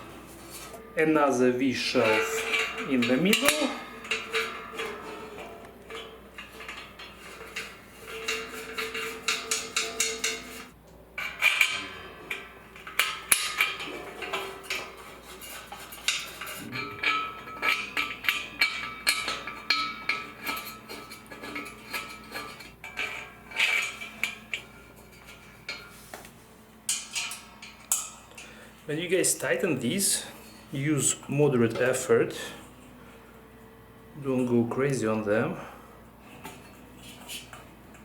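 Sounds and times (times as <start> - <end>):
allen key clinking on steel bolts: 1.9 - 26.0.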